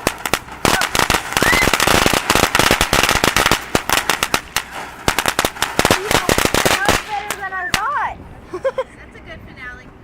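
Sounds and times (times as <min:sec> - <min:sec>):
firework crackling bangs: 0:00.0 - 0:08.1
firework crack: 0:00.0 - 0:08.2.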